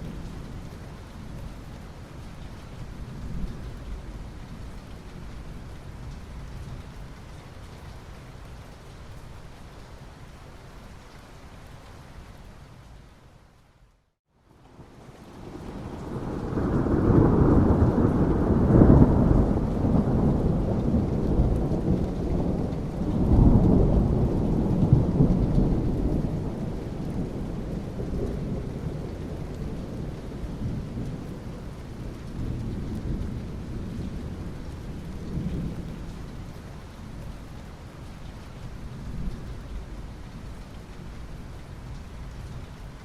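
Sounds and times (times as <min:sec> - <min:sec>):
steady rain: 0:00.0 - 0:43.0
thunder rumble: 0:14.8 - 0:36.2.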